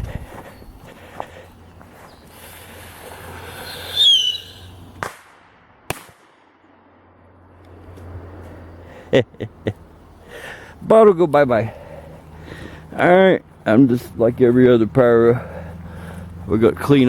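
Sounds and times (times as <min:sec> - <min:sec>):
firecracker hiss and whistle: 0:02.9 - 0:05.2
firecracker bangs: 0:04.0 - 0:06.5.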